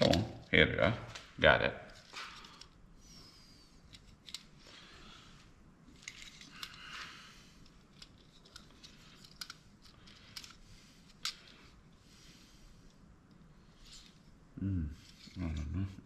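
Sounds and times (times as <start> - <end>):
clicks and scraping of small parts: 1.9 - 2.9, 3.8 - 11.9, 12.8 - 14.4, 15.0 - 15.6.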